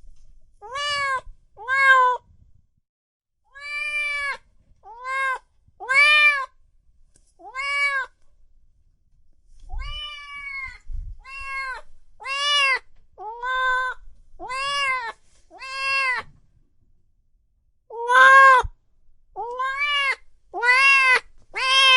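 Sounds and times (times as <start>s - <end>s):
cat meowing: 0.6s - 2.2s, 3.5s - 6.6s, 7.4s - 8.2s, 9.7s - 16.3s, 17.9s - 18.8s, 19.4s - 21.9s.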